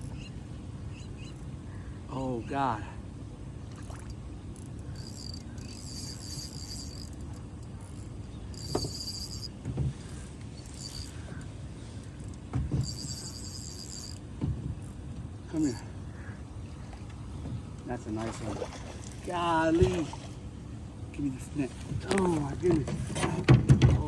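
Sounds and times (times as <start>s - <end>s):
fishing reel buzzing: 4.6s - 9.6s, 10.6s - 11.4s, 12.8s - 14.2s.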